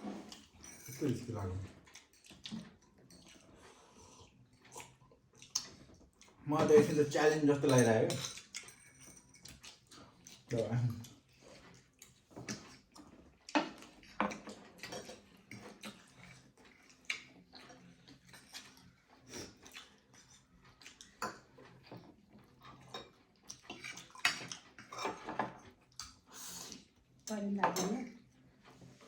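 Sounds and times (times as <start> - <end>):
cutlery clinking on plates: 6.6 - 10.5, 13.6 - 16.1, 21.2 - 25.7, 27.6 - 28.1.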